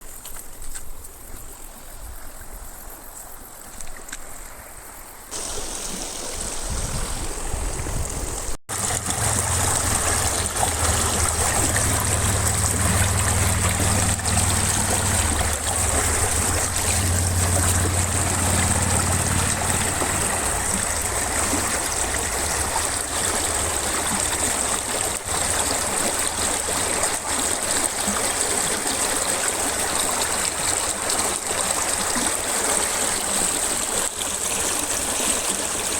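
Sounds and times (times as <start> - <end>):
river water flowing: 3.4 - 35.9
low rumble: 8.9 - 23.8.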